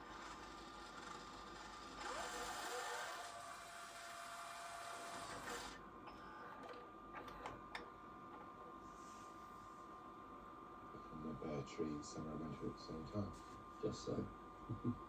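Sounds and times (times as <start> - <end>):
motor mechanism whirring: 0.1 - 5.8.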